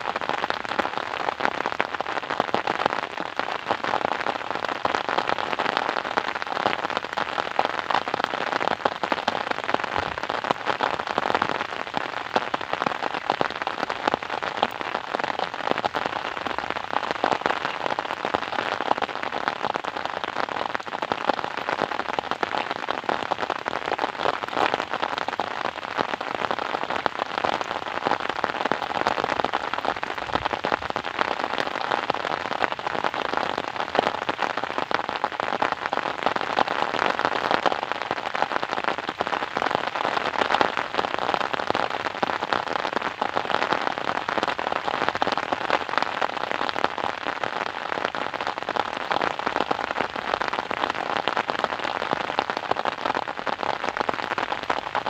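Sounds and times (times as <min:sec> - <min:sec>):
steady rain pattering: 0:00.0 - 0:55.0.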